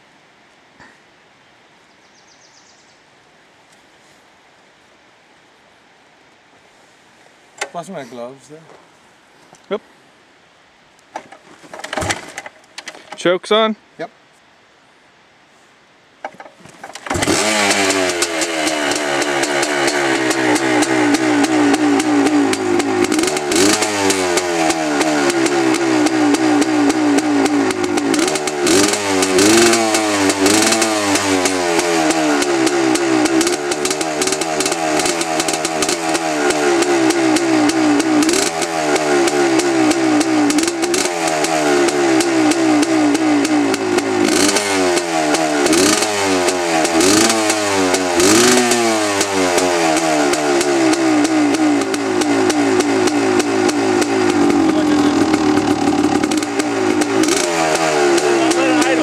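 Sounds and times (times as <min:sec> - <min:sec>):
dirtbike engine revving: 0:16.8 - 0:59.0.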